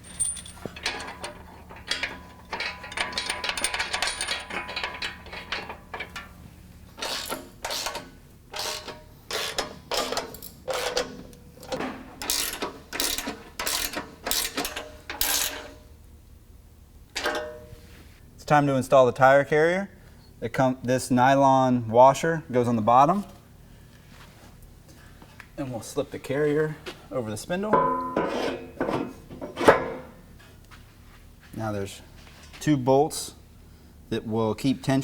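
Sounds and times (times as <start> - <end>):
ratchet wrench clicking: 12.2 - 15.6.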